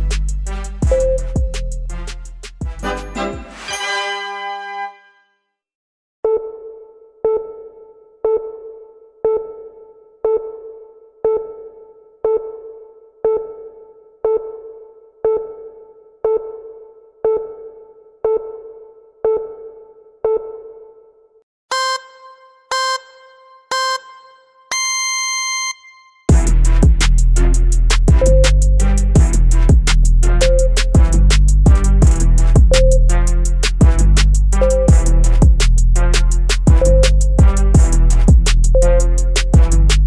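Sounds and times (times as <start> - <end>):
long held beep: 0.9 - 1.7, 21.7 - 26.3, 28.3 - 28.6, 32.7 - 33.1, 38.8 - 39.1
low timer beeps: 0.9 - 1.7, 21.7 - 26.2, 28.2 - 28.8, 30.4 - 31.0, 32.7 - 33.1, 36.8 - 37.4, 38.8 - 39.2
high short timer beeps: 32.7 - 33.1.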